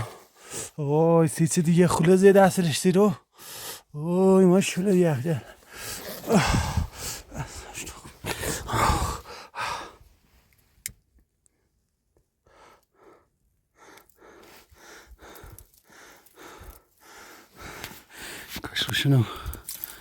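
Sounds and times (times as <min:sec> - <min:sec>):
person gasping for breath: 0:05.7 - 0:10.0, 0:13.8 - 0:18.5.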